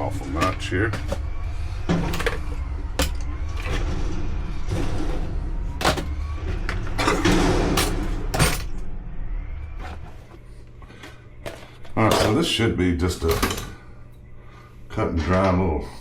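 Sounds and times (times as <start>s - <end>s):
hand tools clanking: 0.0s - 1.3s, 1.9s - 3.8s
tools rattling: 0.0s - 3.9s, 5.8s - 8.8s, 11.4s - 12.6s
steady low rumble: 0.0s - 12.1s.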